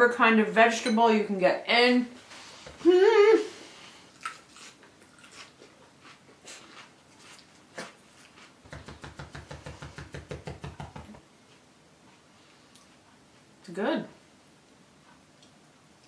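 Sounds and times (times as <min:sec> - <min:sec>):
soft clicks of eating: 0:12.1 - 0:13.2, 0:14.7 - 0:16.0.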